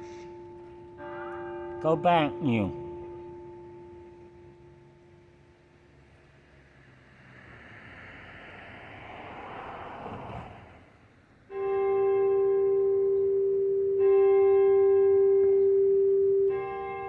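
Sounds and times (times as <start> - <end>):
church bell tolling: 0.0 - 6.6, 11.5 - 17.0
rush of noise: 6.8 - 11.4.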